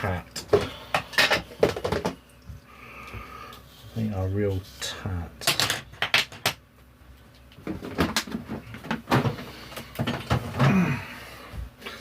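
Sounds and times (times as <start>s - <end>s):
plastic parts clicking and knocking: 0.4s - 2.2s.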